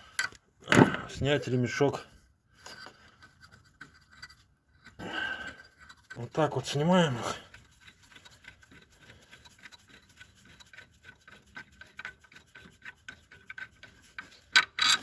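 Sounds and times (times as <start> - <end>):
drive belt rubbing on pulleys: 3.2 - 15.0.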